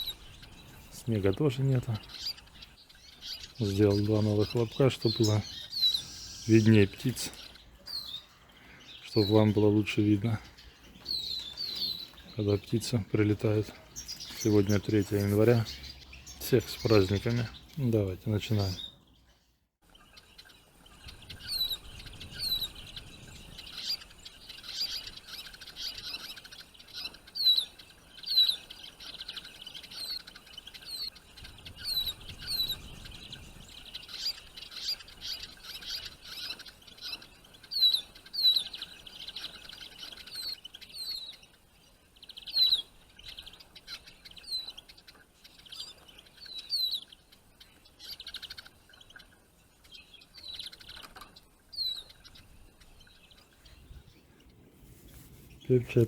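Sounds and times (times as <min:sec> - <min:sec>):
sharp falling whistled calls: 0:00.0 - 0:19.0
songbirds twittering: 0:00.0 - 0:56.0.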